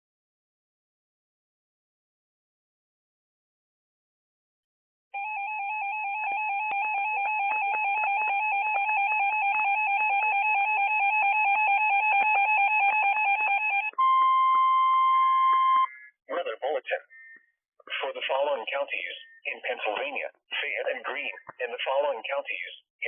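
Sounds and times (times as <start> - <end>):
two-pitch warbling alert tone: 5.2 - 16.1
steady single-pitch beep: 13.8 - 16.2.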